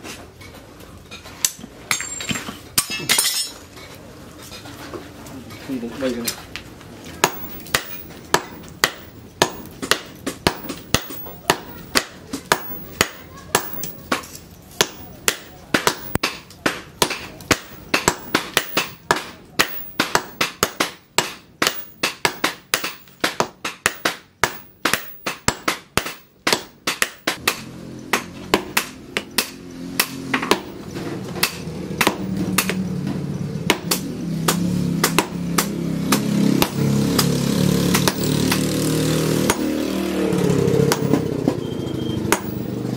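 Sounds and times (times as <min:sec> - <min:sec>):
hammer striking hot steel: 0:07.2 - 0:33.1, 0:33.7 - 0:40.0, 0:40.9 - 0:42.8.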